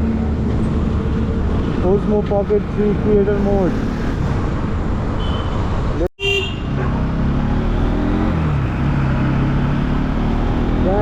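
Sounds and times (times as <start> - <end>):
street traffic: 0.0 - 11.0.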